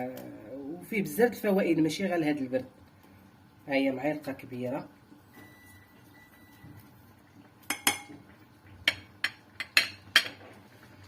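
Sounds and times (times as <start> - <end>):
spoon clinking on saucepan: 7.7 - 8.2.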